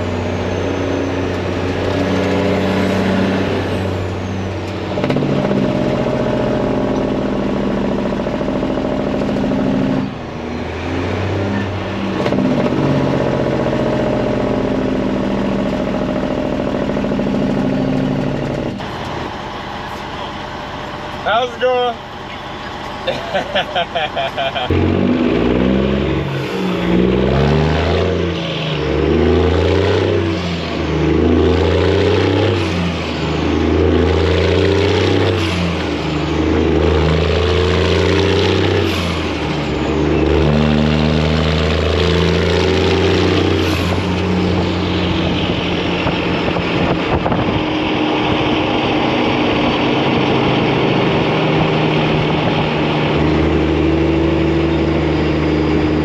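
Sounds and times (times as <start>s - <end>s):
truck diesel engine shifting gears: 0.0s - 56.0s.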